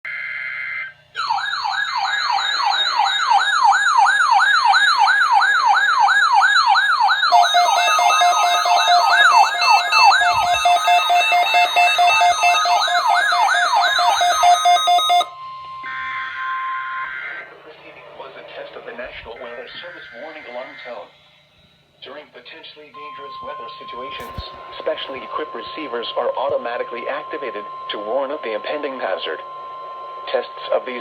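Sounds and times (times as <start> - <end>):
steady alarm tone: 0.1 - 17.6, 23.0 - 31.0
warbling siren: 0.1 - 17.7, 23.6 - 30.9
pulsing beeps: 7.3 - 15.4.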